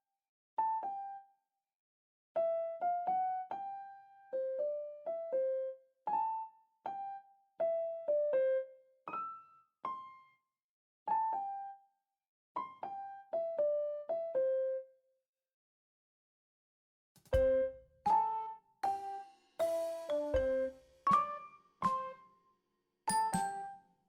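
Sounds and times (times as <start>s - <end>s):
slow electric piano melody: 0.6s - 1.3s, 2.4s - 10.4s, 11.1s - 11.8s, 12.6s - 14.9s, 17.4s - 22.2s.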